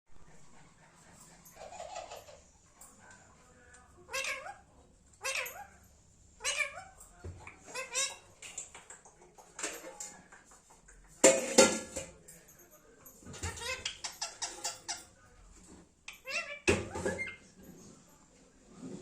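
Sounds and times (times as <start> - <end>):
parakeet calling: 4.1 - 5.8.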